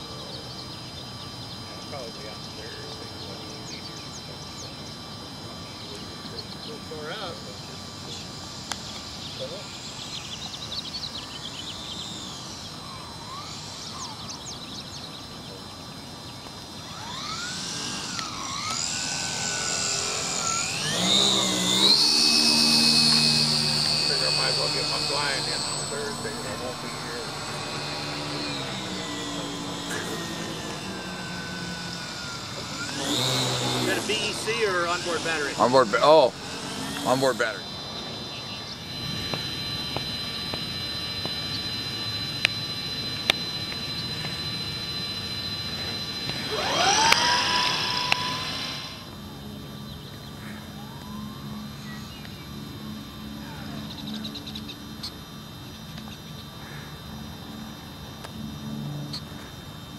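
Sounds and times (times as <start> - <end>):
electric airplane motor whining: 0.0 - 59.9
low buzz: 0.0 - 59.9
sharp clicks: 18.1 - 19.0, 19.9 - 31.1, 38.9 - 44.6, 45.9 - 48.7.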